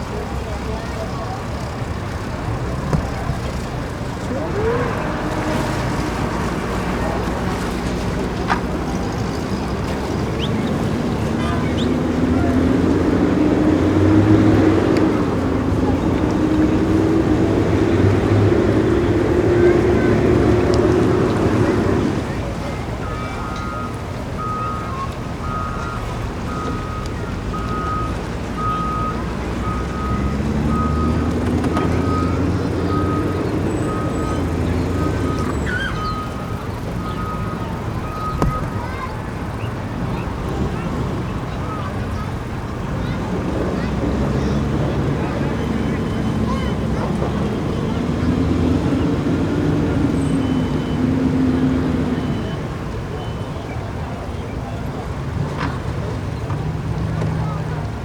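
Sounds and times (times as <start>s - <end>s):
vehicle engine running: 0.0s - 58.0s
reversing alarm beeping: 23.0s - 39.1s, 50.1s - 53.6s.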